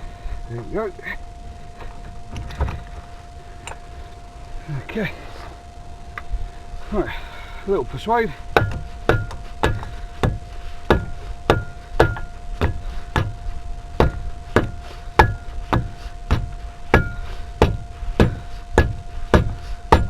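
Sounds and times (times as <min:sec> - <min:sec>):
hammer blows on metal: 0:08.5 - 0:20.0.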